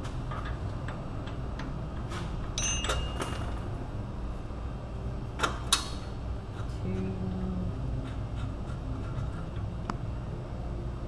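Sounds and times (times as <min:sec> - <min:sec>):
short ringing clink: 0:02.6 - 0:03.6.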